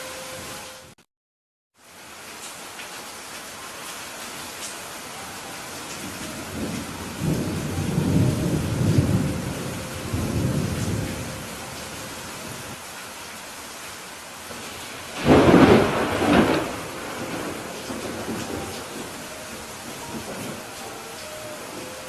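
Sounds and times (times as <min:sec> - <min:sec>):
steady rain: 0:00.0 - 0:01.0, 0:01.8 - 0:22.0
thunder rumbling: 0:05.9 - 0:12.8, 0:14.5 - 0:22.0.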